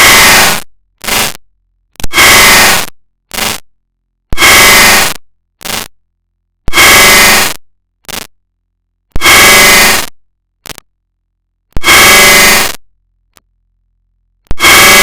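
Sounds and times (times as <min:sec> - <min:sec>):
harsh static noise bursts: 0:00.0 - 0:01.4, 0:02.0 - 0:03.7, 0:04.3 - 0:05.9, 0:06.6 - 0:08.3, 0:09.1 - 0:10.8, 0:11.7 - 0:12.8, 0:14.5 - 0:15.0.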